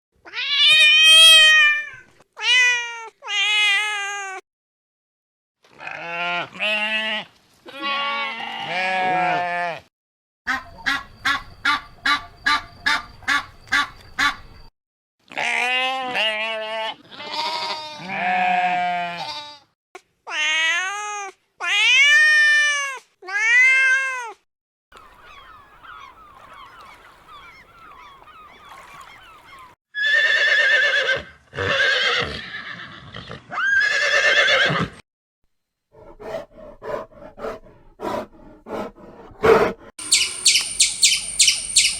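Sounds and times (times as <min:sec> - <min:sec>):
goat-like bleats: 0:05.7 - 0:09.9, 0:15.3 - 0:19.7
loud harsh animal calls: 0:40.0 - 0:41.9
rising and falling animal calls: 0:40.0 - 0:41.9
short pulsed animal calls: 0:40.0 - 0:41.9.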